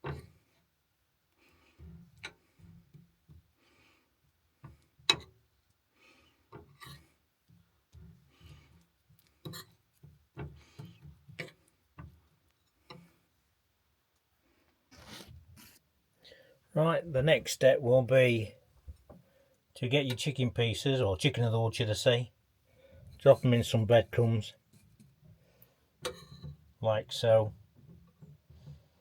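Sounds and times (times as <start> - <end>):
small taps and clicks in a bowl: 4.6 - 5.8
soft rubbing and scuffing: 14.9 - 15.8.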